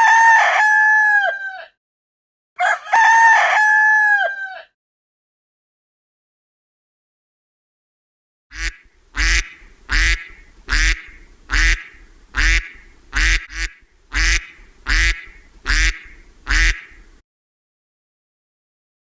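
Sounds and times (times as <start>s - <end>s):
duck quacking: 8.5s - 17.1s.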